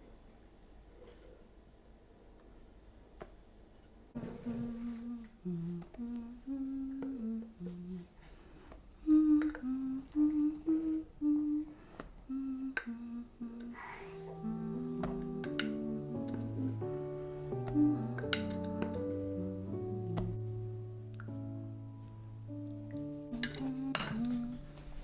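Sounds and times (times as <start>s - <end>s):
person humming a slow tune: 4.2s - 8.2s, 9.0s - 21.9s, 22.5s - 25.0s.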